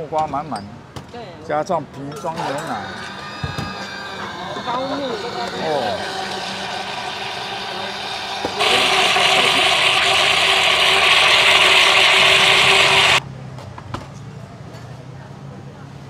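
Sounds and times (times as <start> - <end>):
electric blender whirring: 2.4 - 13.2.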